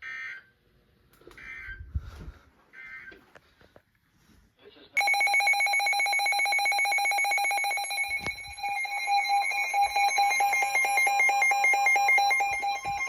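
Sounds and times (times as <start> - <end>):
trilling electronic alarm beep: 5.0 - 13.0.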